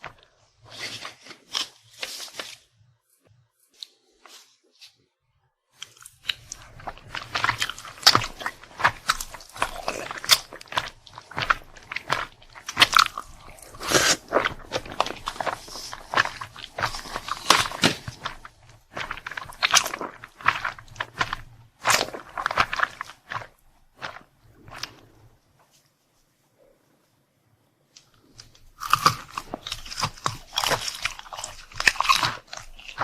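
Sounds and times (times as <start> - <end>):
crunchy chewing: 5.8 - 25.3, 28.0 - 33.0.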